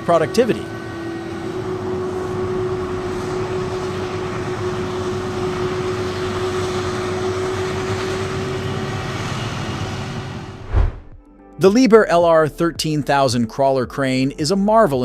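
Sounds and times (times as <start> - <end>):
large machine engine rumble: 0.0 - 11.2.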